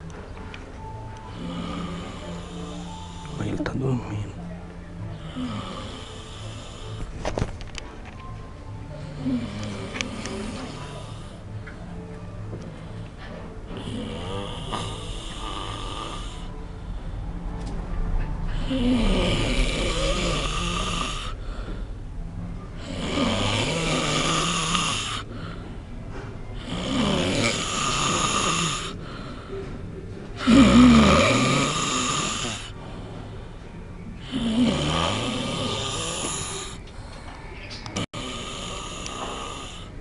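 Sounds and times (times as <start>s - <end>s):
man snoring loudly: 1.3s - 3.4s, 5.2s - 7.0s, 13.8s - 16.5s, 18.6s - 21.4s, 22.8s - 25.4s, 26.6s - 29.0s, 30.4s - 32.8s, 34.2s - 36.8s, 38.0s - 39.9s.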